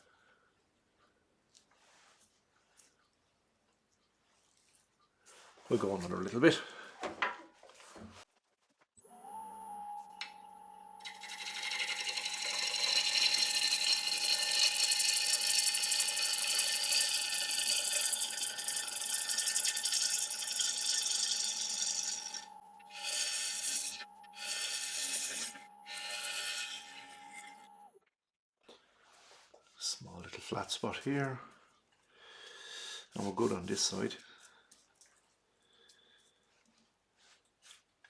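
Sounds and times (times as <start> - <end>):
lathe motor whine: 9.1 - 27.9
gouge scraping spinning wood: 11.0 - 27.9.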